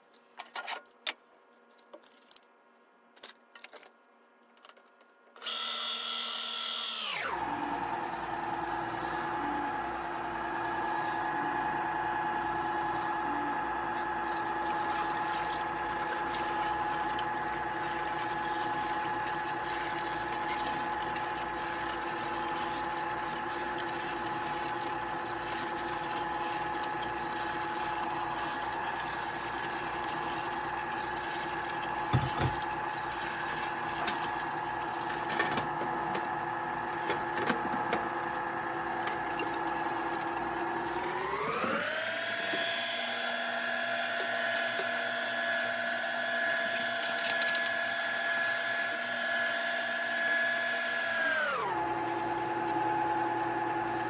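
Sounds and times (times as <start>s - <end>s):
ice cream maker humming: 5.4s - 54.0s.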